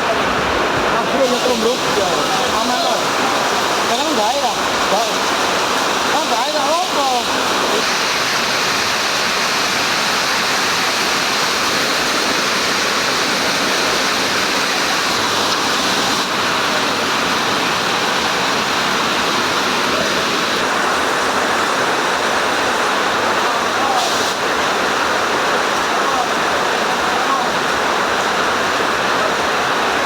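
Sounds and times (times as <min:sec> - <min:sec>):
rain falling steadily: 0:00.0 - 0:30.0.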